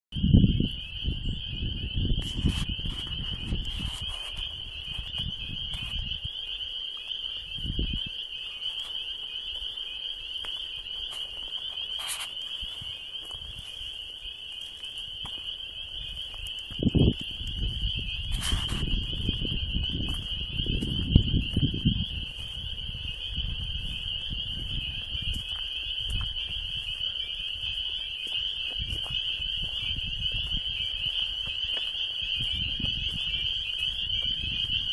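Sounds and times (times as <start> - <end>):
microphone bumps and rumbles: 0.2 - 6.3, 15.0 - 34.9
shrill trilling chorus of animals: 0.2 - 34.9.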